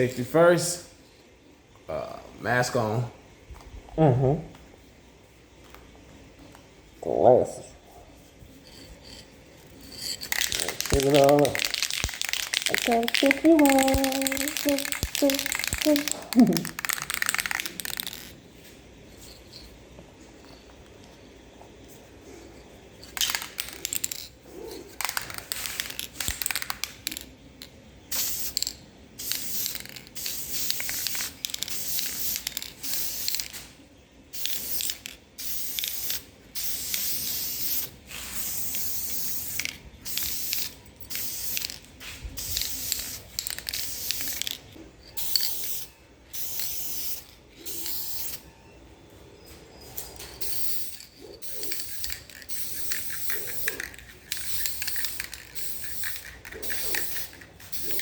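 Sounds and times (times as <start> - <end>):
spray paint can hissing: 9.9 - 18.4, 23.0 - 24.3, 24.9 - 27.3, 28.1 - 33.7, 34.3 - 44.6, 45.2 - 48.5, 50.4 - 58.0.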